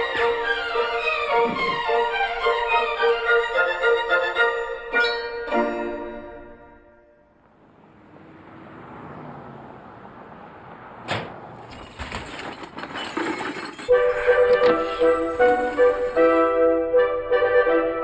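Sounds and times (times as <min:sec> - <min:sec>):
loud piano-led music: 0:00.0 - 0:06.9, 0:13.9 - 0:18.0
glassy clinking and tinkling: 0:12.9 - 0:16.2.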